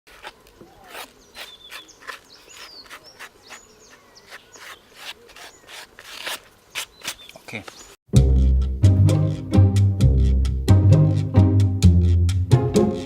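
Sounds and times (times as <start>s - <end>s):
birds gliding whistles: 0.6s - 5.9s, 6.7s - 8.0s.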